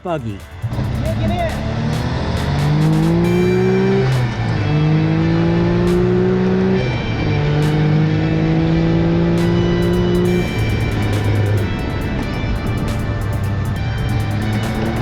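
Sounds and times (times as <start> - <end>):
dune buggy engine revving: 0.6 - 15.0
sharp ticks: 9.4 - 15.0.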